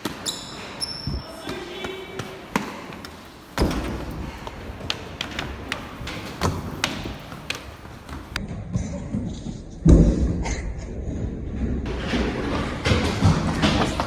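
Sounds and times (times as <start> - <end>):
footsteps on hard floor: 1.5 - 8.4
heavy thud: 3.5 - 8.4.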